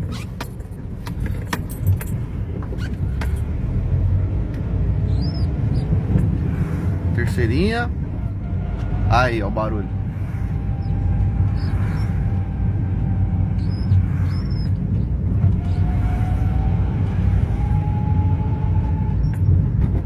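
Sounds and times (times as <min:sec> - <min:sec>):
car rumble: 0:00.0 - 0:20.0
gearbox whine: 0:00.0 - 0:20.0.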